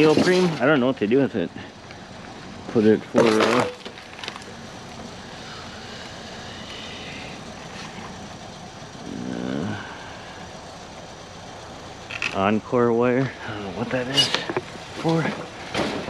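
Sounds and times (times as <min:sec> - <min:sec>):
vehicle noise: 0:00.0 - 0:16.0
man murmuring: 0:09.0 - 0:10.1.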